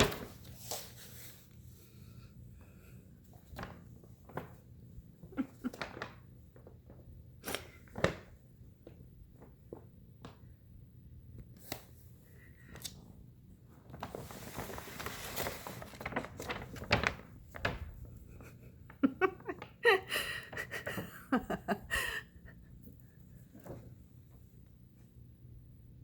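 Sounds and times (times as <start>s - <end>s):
bag rustling and crinkling: 13.7s - 18.1s.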